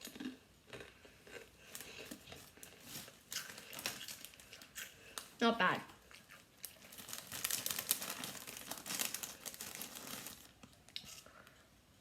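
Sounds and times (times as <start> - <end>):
crisp packet crinkling: 1.6 - 5.3, 6.4 - 11.3.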